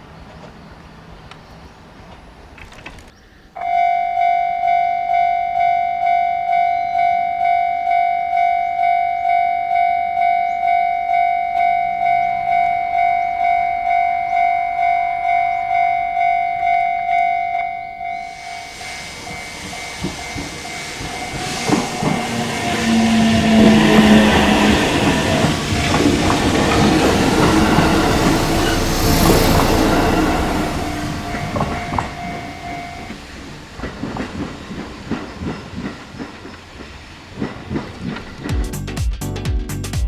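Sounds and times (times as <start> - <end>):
approaching train: 0.0 - 39.0
level crossing electronic bell: 3.6 - 18.4, 30.7 - 33.2.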